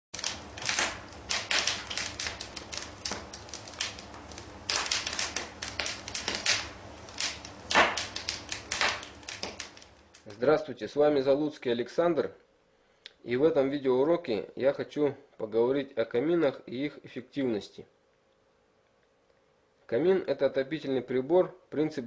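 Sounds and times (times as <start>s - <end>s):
rapid clicking and tapping: 0.2s - 10.2s.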